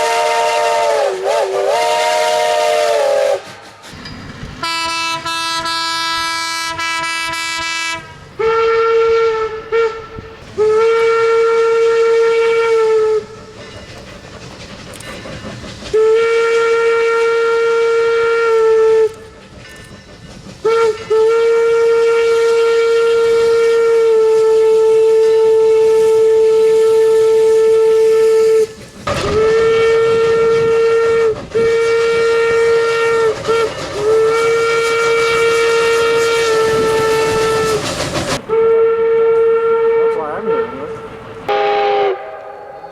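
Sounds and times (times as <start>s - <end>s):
locomotive whistle blasts: 0.0s - 4.0s, 4.6s - 13.5s, 15.9s - 19.3s, 20.6s - 42.9s
lower-pitched whistle note: 0.0s - 13.3s, 38.5s - 42.9s
rolling train rumble: 0.0s - 42.9s.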